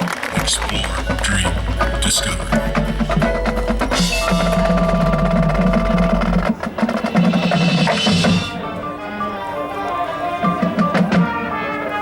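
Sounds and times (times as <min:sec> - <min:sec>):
drums: 0:00.0 - 0:08.8, 0:10.4 - 0:11.8
marching band playing: 0:00.0 - 0:12.0
deep low drone: 0:00.4 - 0:06.5.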